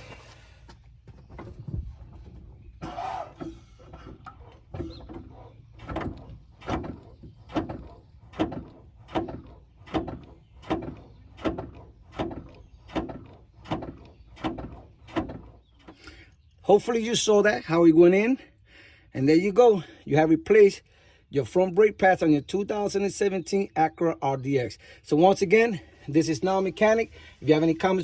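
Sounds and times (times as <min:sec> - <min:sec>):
brake pedal clunks: 0:00.0 - 0:16.3.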